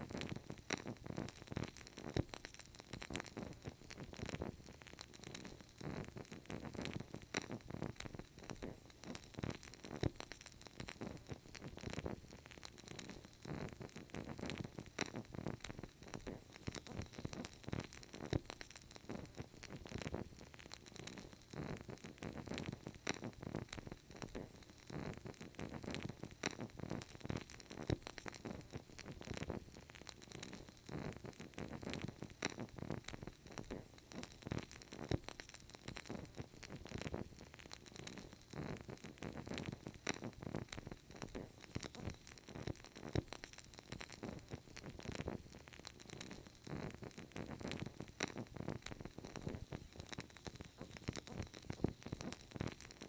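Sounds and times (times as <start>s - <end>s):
candle crackling and popping: 0.0s - 53.0s.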